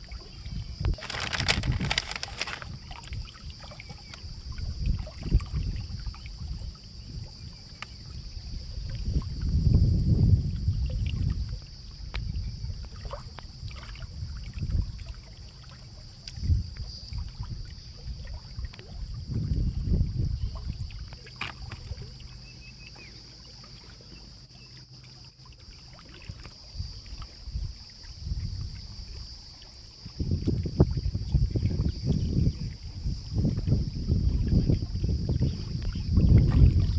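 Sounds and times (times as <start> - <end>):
wind gusts on microphone: 0.0 - 15.2, 16.3 - 22.1, 26.2 - 36.9.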